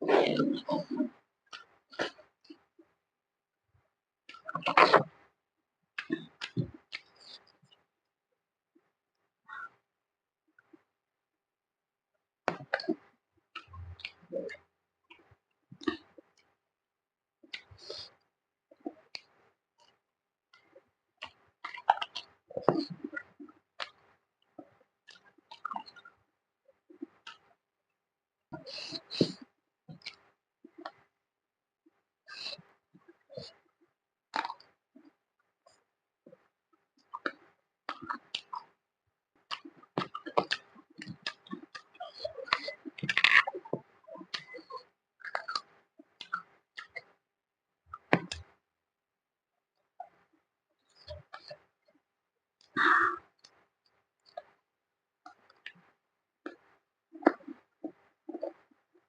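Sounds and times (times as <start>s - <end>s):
chewing with mouth clicks: 20.6s - 26.2s, 26.9s - 27.5s, 34.4s - 34.7s, 39.5s - 47.1s, 54.2s - 54.6s, 55.2s - 58.7s
chewing and biting food: 44.3s - 45.6s.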